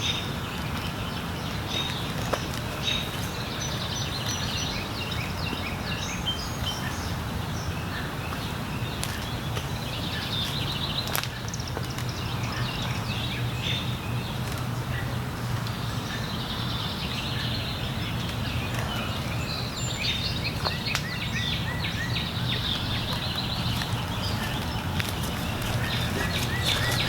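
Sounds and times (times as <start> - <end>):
birds chirping: 21.5 - 27.0
steady low hum: 22.3 - 27.0.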